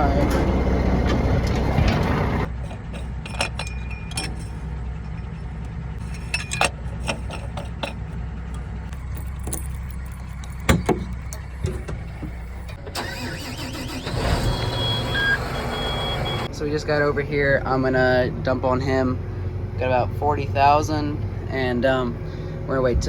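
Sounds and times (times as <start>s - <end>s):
clinks and rattles: 0.0s - 12.8s
vehicle engine humming: 0.0s - 23.0s.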